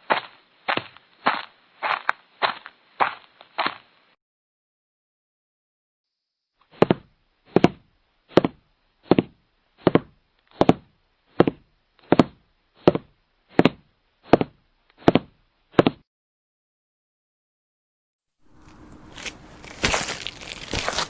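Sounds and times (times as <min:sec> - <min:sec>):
footsteps walking: 0:00.0 - 0:03.9, 0:18.4 - 0:21.0.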